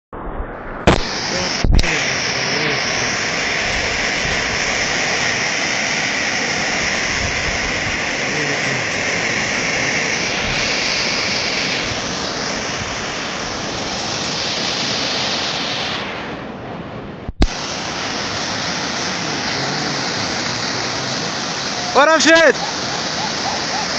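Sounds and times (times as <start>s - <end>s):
floodwater rushing: 0.6s - 23.9s.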